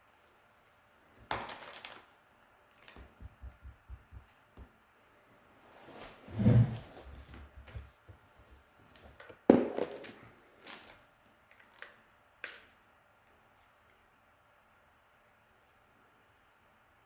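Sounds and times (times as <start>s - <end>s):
plastic packaging crinkling: 1.3s - 2.1s.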